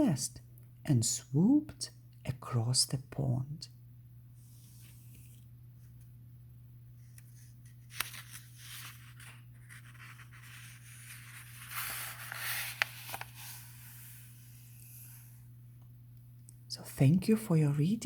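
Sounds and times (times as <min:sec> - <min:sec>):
low electrical hum: 0:00.0 - 0:18.0
soft rustling and scraping: 0:07.0 - 0:15.3.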